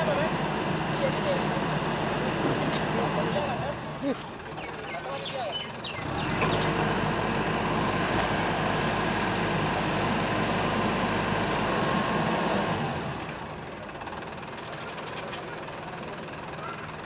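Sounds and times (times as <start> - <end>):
heavy engine running: 0.0 - 17.0.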